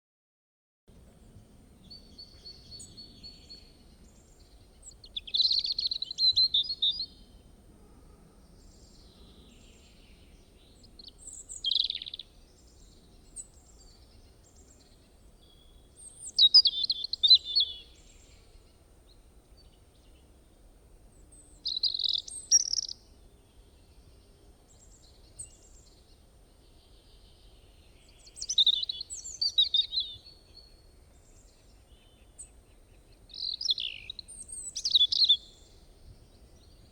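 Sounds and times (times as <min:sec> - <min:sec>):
bird chirping and trilling: 0:04.8 - 0:07.2, 0:11.1 - 0:12.2, 0:16.2 - 0:17.9, 0:21.5 - 0:23.0, 0:28.3 - 0:30.2, 0:33.4 - 0:35.6.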